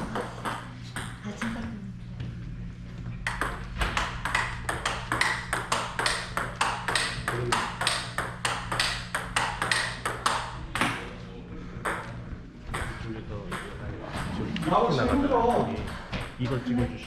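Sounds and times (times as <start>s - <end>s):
steady low hum: 0.0s - 17.0s
table tennis ball clicks: 3.3s - 11.0s.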